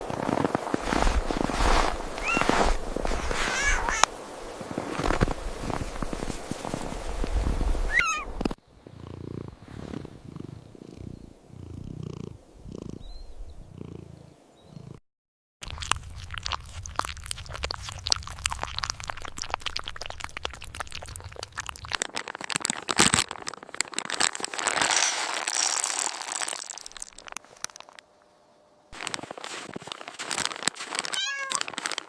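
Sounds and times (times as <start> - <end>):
kittens crunching dry food: 0.0 - 4.1, 15.6 - 28.1, 29.0 - 32.0.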